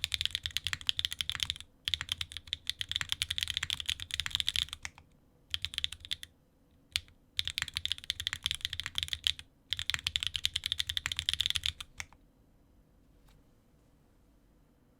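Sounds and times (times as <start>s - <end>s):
typing on mechanical keyboard: 0.0s - 6.3s, 6.9s - 12.2s.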